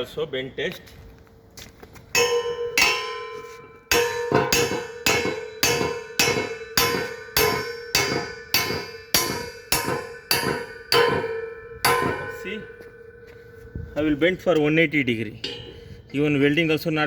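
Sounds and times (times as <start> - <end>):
hammer clanging on steel bar: 2.2 - 13.5, 15.4 - 16.0.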